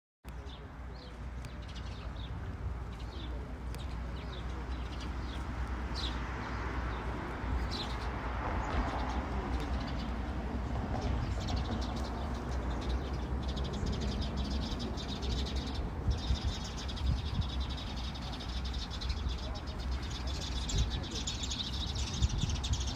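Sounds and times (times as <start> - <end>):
wind on microphone: 15.7 - 18.0, 21.9 - 22.9.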